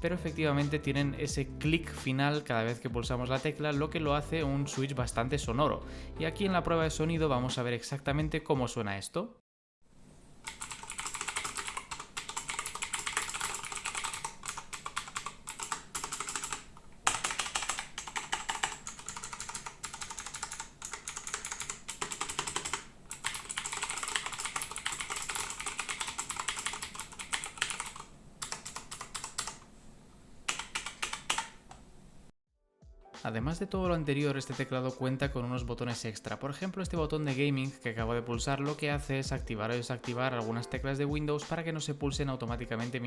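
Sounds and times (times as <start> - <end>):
mechanical keyboard typing: 10.4 - 29.6, 30.5 - 31.8.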